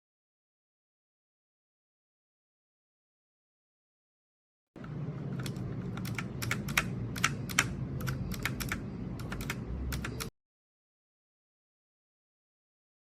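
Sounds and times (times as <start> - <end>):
mechanical keyboard typing: 4.8 - 10.3
steady low hum: 4.8 - 10.3.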